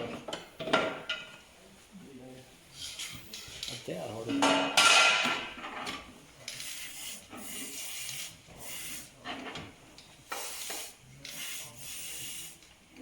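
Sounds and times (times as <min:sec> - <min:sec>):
rasping hissing strokes: 0:06.5 - 0:09.2, 0:10.3 - 0:12.6.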